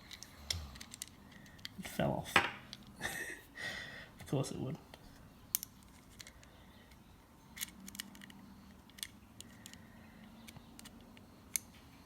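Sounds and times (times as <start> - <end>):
small metal parts clicking: 0.0 - 1.8, 5.5 - 6.5, 7.6 - 11.7.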